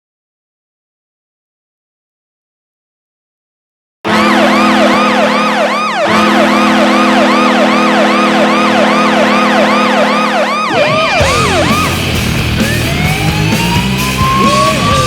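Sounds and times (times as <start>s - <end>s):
low goal horn blast: 4.1s - 12.7s
whooping siren: 4.1s - 15.0s.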